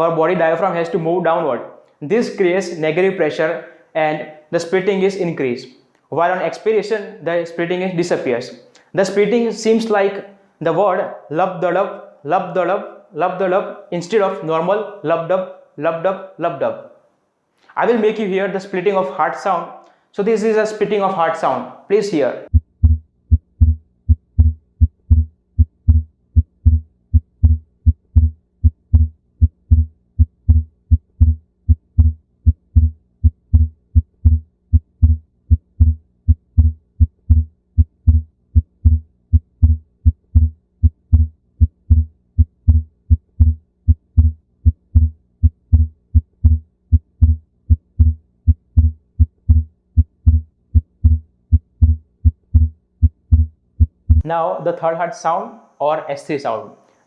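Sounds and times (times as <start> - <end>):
faint steady hum: 21.8 - 54.8
heartbeat thumps: 22.5 - 54.2.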